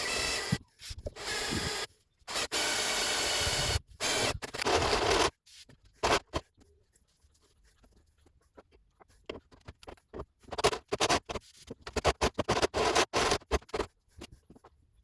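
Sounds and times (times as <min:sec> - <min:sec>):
hand tool scraping and clicking: 0:03.0 - 0:06.4, 0:09.3 - 0:14.6.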